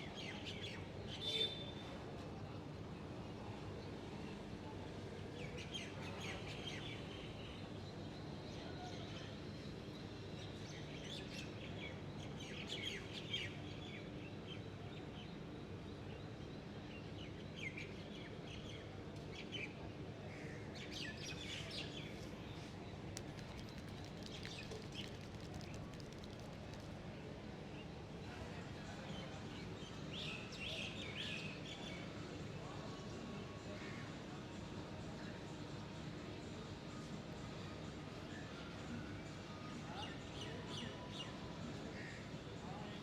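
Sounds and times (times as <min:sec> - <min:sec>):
birds chirping: 0:22.1 - 0:26.9.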